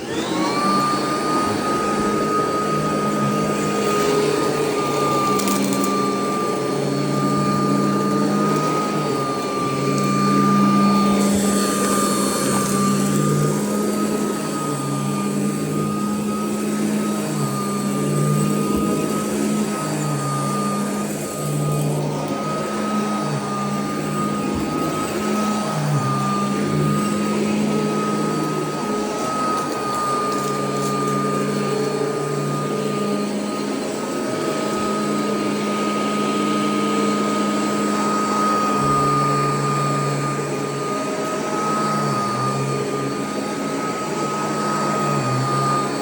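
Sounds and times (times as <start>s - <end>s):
vacuum cleaner motor whine: 0.0s - 46.0s.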